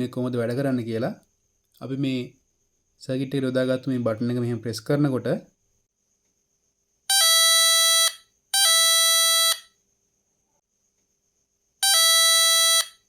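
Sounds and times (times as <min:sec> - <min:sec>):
buzzy electronic doorbell tone: 0:11.8 - 0:13.0.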